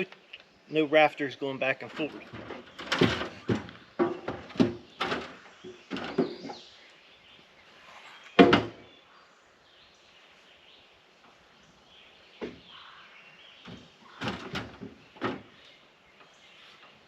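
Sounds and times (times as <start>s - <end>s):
lumber clattering: 1.6s - 6.7s, 8.3s - 8.9s, 13.6s - 17.0s
wooden lumber knocks: 2.0s - 6.6s, 8.4s - 8.9s, 12.4s - 12.7s, 13.6s - 15.6s.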